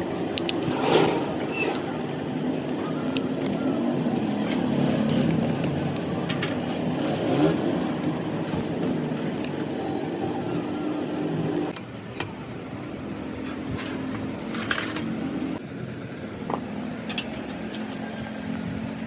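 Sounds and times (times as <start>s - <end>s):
metallic clinks: 2.9s - 9.5s.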